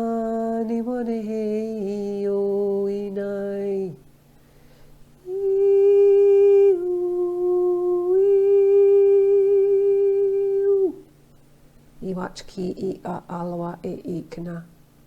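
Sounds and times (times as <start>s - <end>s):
woman toning a long held note: 5.2s - 11.0s.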